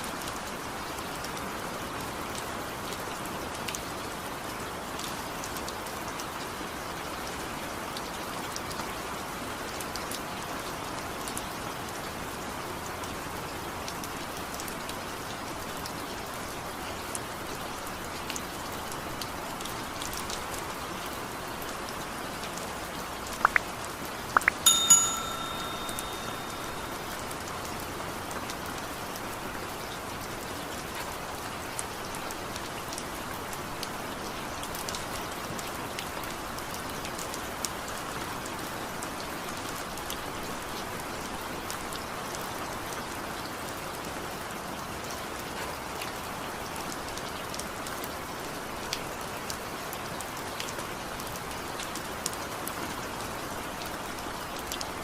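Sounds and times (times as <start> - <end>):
steady rain falling: 0.0 - 55.0
raindrops tapping: 23.2 - 27.9
short ringing tone: 24.4 - 27.3.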